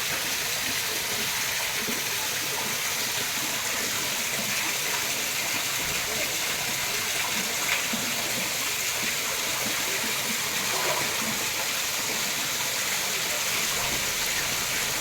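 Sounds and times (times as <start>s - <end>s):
running water rushing: 0.0s - 15.0s.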